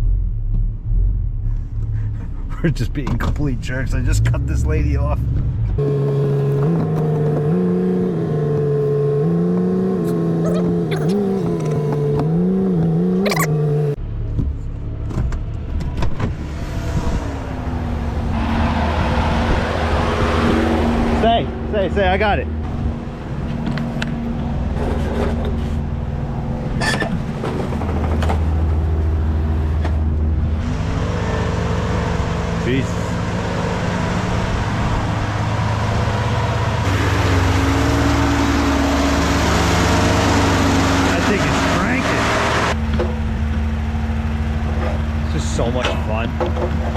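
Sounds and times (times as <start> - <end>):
vehicle engine running: 21.2 - 46.9.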